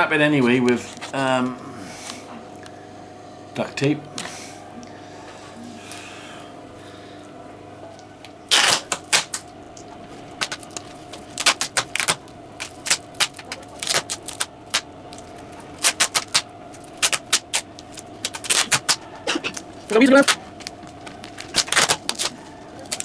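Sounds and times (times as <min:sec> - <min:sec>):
duct tape ripping off roll: 0:08.5 - 0:09.4, 0:10.4 - 0:19.6, 0:20.2 - 0:23.0.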